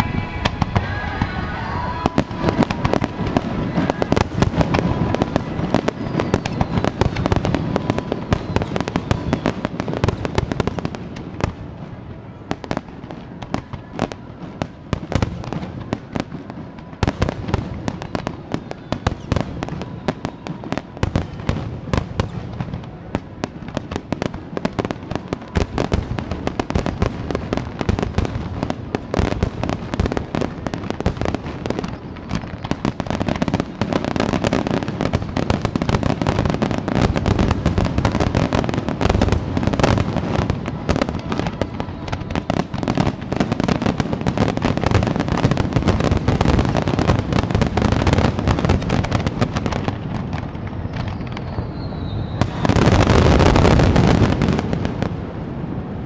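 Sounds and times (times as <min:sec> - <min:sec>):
fireworks bursting with bangs: 0:00.0 - 0:56.0
fireworks crackle: 0:00.0 - 0:56.0.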